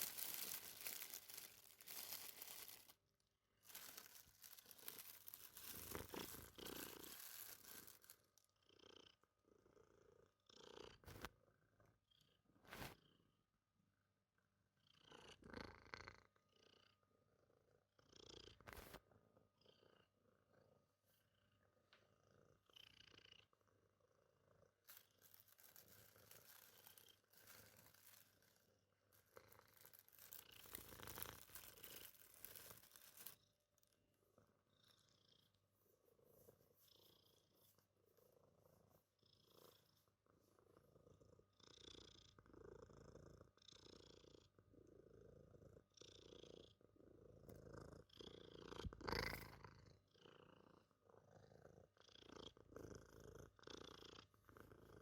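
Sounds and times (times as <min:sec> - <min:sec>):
rustling: 0:00.0 - 0:03.0, 0:03.6 - 0:08.4, 0:24.9 - 0:33.4
cat purring: 0:00.0 - 0:55.0.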